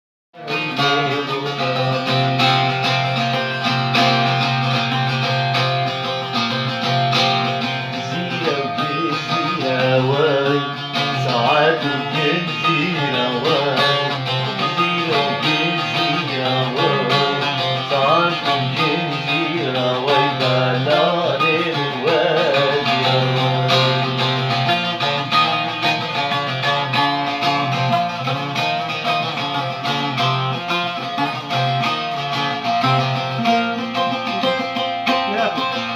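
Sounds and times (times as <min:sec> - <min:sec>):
person singing: 0:00.4 - 0:03.1, 0:07.6 - 0:26.4
guitar music: 0:00.4 - 0:35.9.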